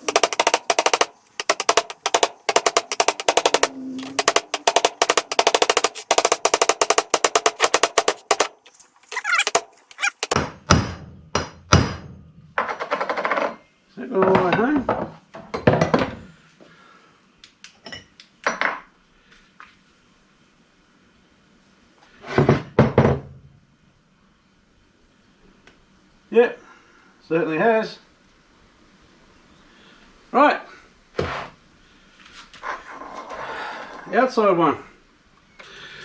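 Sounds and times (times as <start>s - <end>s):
hammer tapping on metal: 0.0s - 10.4s
tools and parts clunking: 0.0s - 10.4s.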